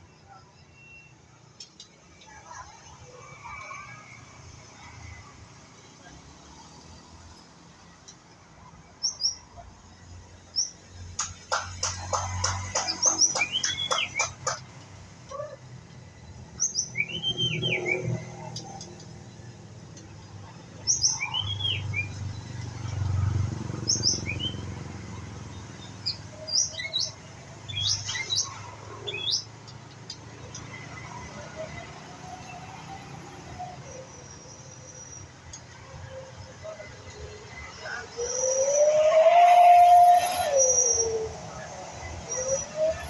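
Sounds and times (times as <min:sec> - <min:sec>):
bird whistling song: 0:12.1 - 0:14.6, 0:16.6 - 0:19.0, 0:20.8 - 0:22.3, 0:23.8 - 0:24.7, 0:25.5 - 0:29.5, 0:30.5 - 0:43.0.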